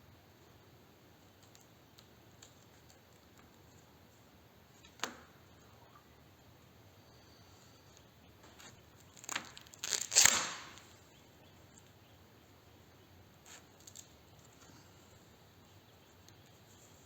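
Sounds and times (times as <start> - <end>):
tape rustling: 8.0 - 11.0, 13.4 - 15.1
tape tearing rip: 9.1 - 11.0.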